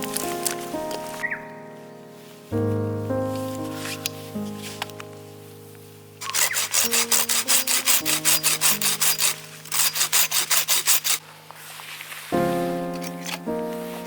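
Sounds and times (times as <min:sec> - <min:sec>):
saw cutting wood: 0:06.2 - 0:11.2.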